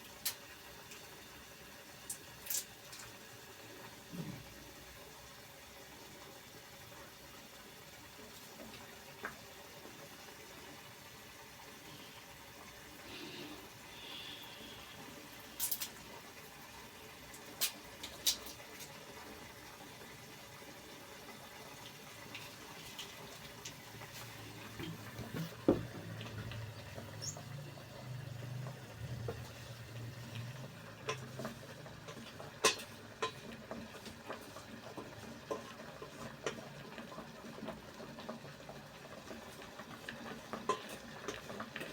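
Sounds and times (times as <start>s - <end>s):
steady hiss: 11.7s - 16.2s.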